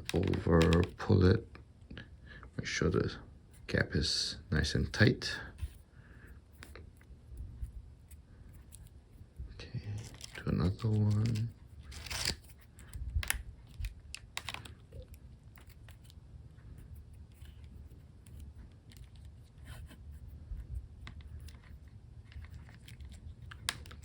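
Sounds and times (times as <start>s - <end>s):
low steady hum: 0.0s - 24.0s
string clicks and rustles: 6.5s - 24.0s.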